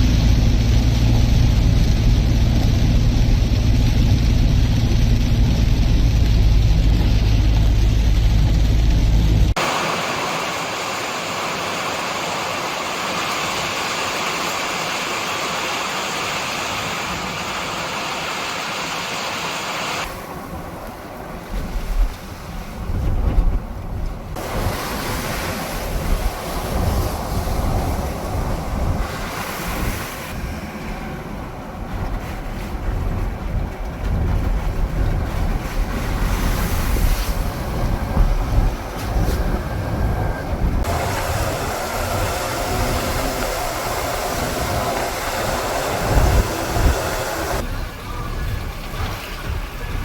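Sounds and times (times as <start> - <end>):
heavy low rumble: 0.0 - 9.6, 20.0 - 50.0
wind buffeting microphone: 20.1 - 50.0.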